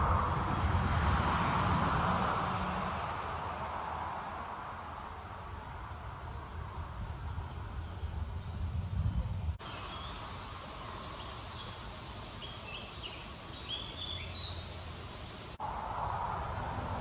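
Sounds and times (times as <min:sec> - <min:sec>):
wind buffeting microphone: 0:00.0 - 0:03.2, 0:05.3 - 0:09.6
small birds chirping: 0:06.3 - 0:15.5
outdoor hiss: 0:09.5 - 0:17.0.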